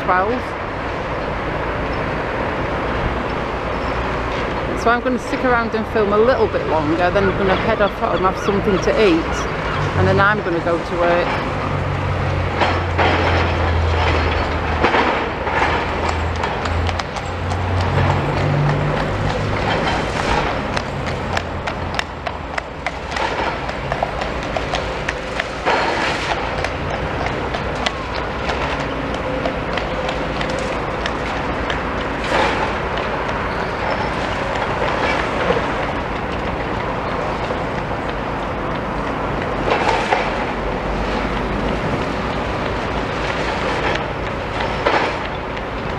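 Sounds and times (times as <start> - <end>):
rubble and metal clanking: 11.1 - 21.1.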